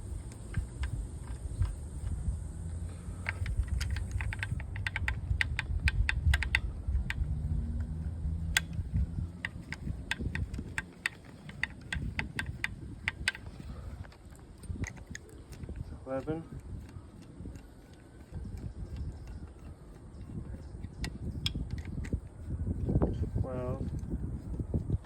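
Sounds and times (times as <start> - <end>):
wind rumble on microphone: 0.0 - 25.0
hand tool metallic clicks: 3.2 - 22.2.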